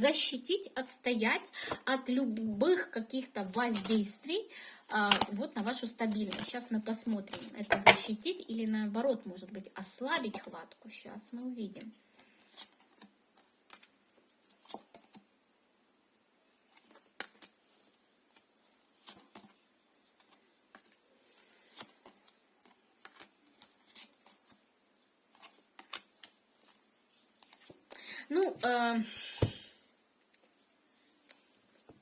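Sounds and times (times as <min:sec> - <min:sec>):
cards clicking and snapping: 0:05.1 - 0:05.3, 0:16.8 - 0:17.6, 0:21.7 - 0:24.6, 0:25.3 - 0:26.8.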